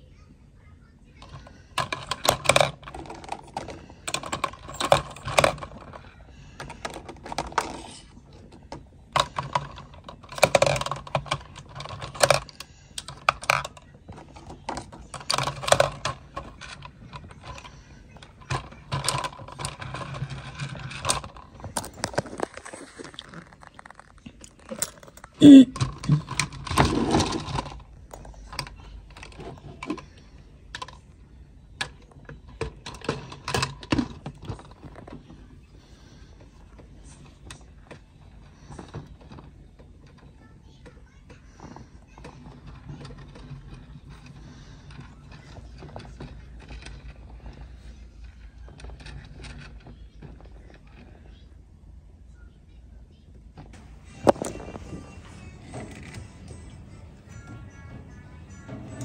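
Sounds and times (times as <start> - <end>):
plastic and cardboard rustling: 13.2 - 25.1, 53.7 - 59.0.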